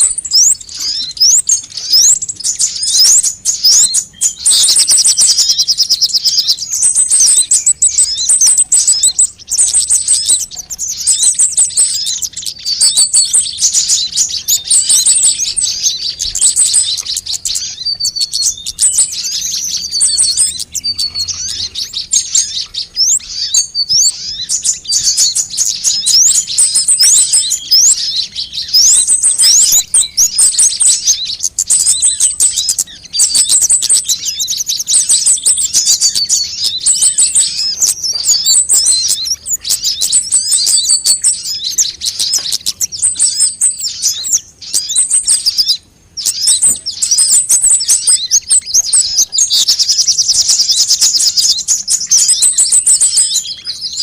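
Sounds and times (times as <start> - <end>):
sunbird chirps and trills: 0.0 - 54.0.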